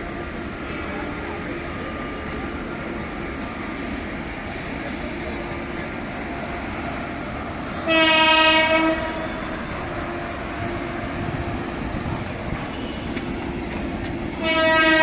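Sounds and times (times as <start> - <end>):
train running noise: 0.0 - 15.0
train horn blast: 7.8 - 10.9, 12.7 - 13.3, 14.4 - 15.0.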